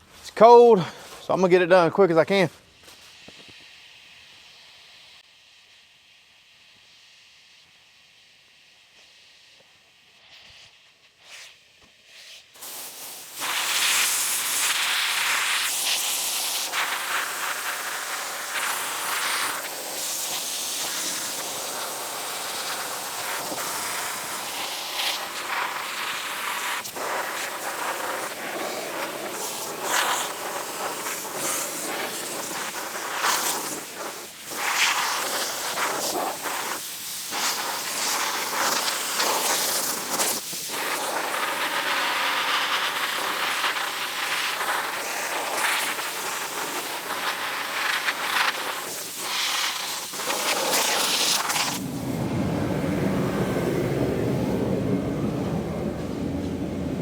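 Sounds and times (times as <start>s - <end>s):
sandblaster hissing on steel: 10.1s - 51.8s.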